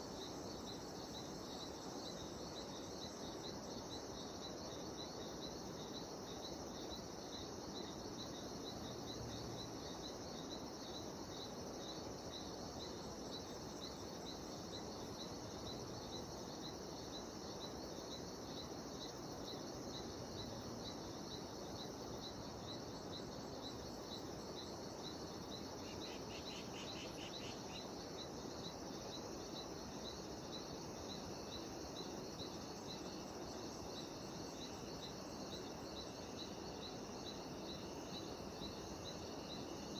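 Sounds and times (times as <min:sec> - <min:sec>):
background hiss: 0:00.0 - 0:39.9
cicadas calling: 0:12.9 - 0:39.9.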